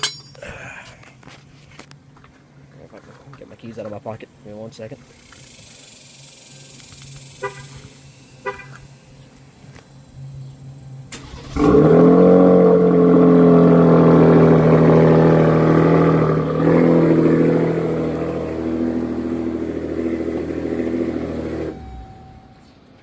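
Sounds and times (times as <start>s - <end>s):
truck engine starting and idling: 5.2s - 23.0s.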